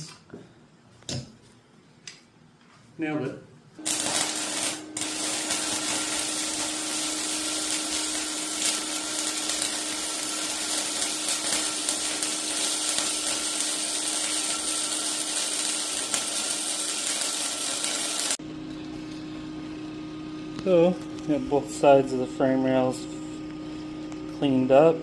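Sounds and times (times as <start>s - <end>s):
angle grinder on steel: 3.8s - 18.4s.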